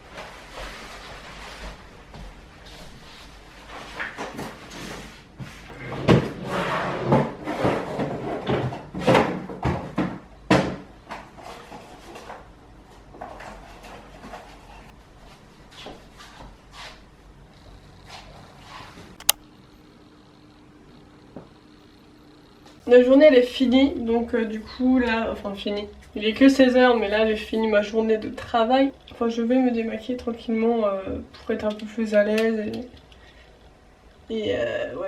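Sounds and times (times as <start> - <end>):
sharp click: 19.2 - 19.4.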